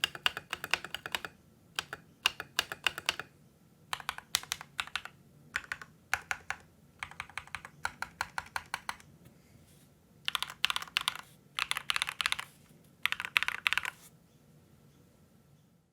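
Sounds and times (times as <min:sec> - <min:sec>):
mechanical keyboard typing: 0:00.0 - 0:03.3, 0:03.9 - 0:09.1, 0:10.3 - 0:14.0.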